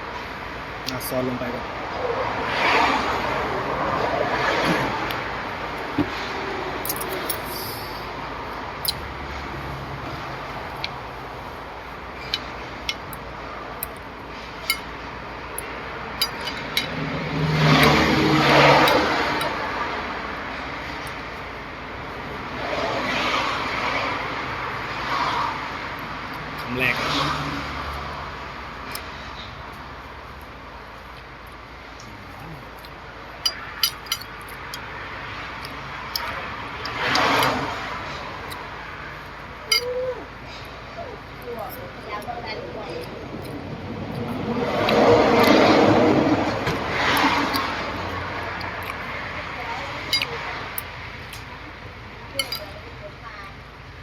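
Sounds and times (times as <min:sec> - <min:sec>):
vehicle passing: 0:00.4 - 0:53.2
metal spoon clinking on plate: 0:16.2 - 0:17.0, 0:33.4 - 0:34.8, 0:52.4 - 0:52.7.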